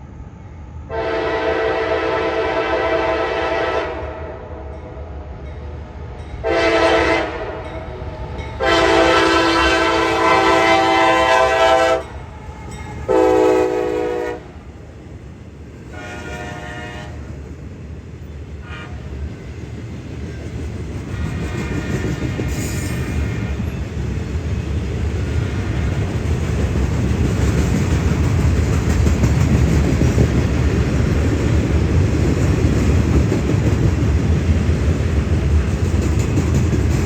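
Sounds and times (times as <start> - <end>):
train rumbling: 0.0 - 37.0
locomotive air horn blasts: 0.9 - 4.5, 6.4 - 7.7, 8.6 - 12.2, 13.1 - 14.6, 15.9 - 17.3, 18.6 - 19.1.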